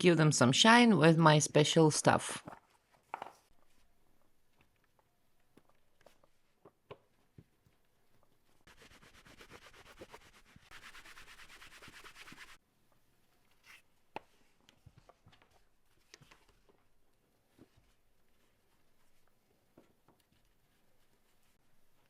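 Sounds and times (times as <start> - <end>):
scratchy rubbing of leather: 8.6 - 12.6.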